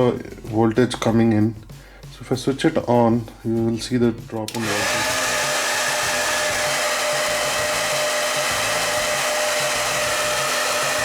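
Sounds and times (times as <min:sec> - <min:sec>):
hair dryer running: 0:04.5 - 0:11.0.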